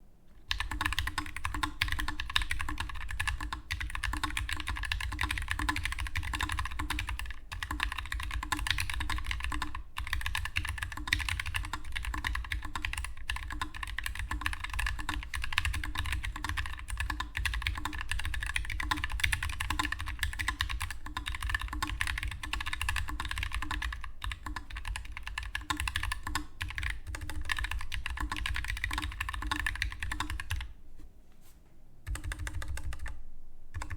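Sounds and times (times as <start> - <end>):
mechanical keyboard typing: 0.5 - 30.7, 32.0 - 33.9.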